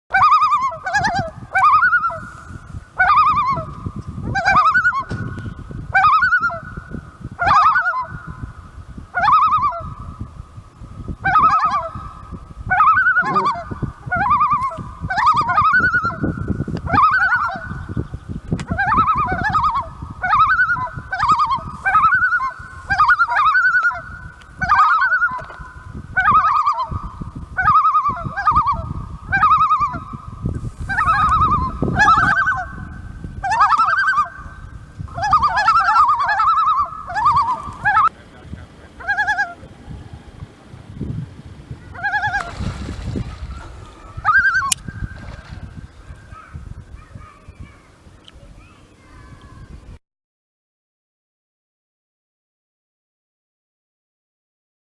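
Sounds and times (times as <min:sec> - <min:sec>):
loons giving tremolo calls: 0:11.2 - 0:18.0, 0:18.7 - 0:47.6.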